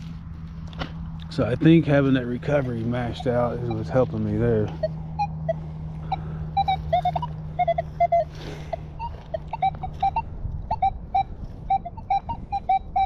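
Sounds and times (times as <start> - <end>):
steady low hum: 0.0 - 13.0
metal detector beeping: 2.2 - 13.0.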